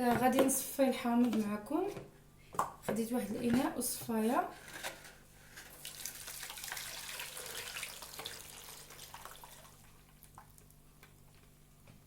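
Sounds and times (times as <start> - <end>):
juice pouring through a sieve: 5.6 - 10.7.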